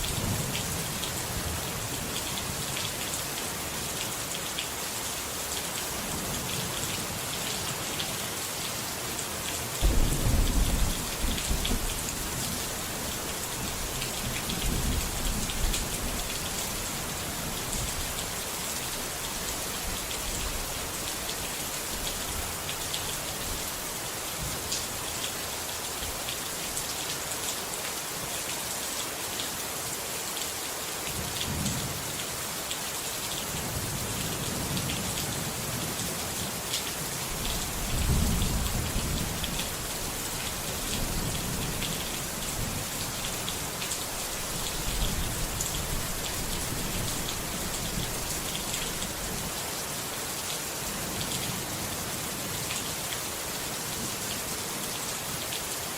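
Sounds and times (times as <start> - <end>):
heavy rain falling: 0.0 - 55.9
thunder rumbling: 9.8 - 12.6.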